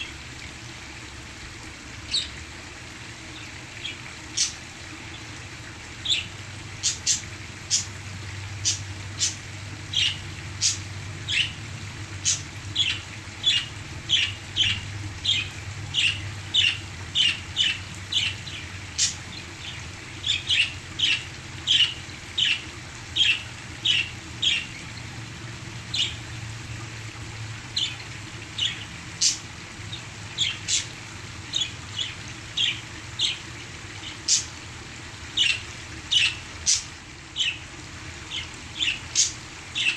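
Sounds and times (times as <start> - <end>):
parakeets chirping: 6.0 - 7.9, 8.5 - 11.6, 12.2 - 24.9, 28.6 - 33.4, 35.3 - 37.6, 38.3 - 39.9.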